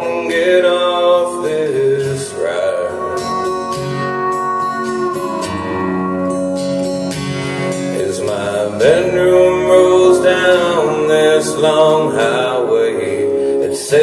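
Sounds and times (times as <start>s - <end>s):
man singing wordless notes: 0.0s - 4.2s, 7.8s - 14.0s
guitar accompaniment: 0.0s - 14.0s.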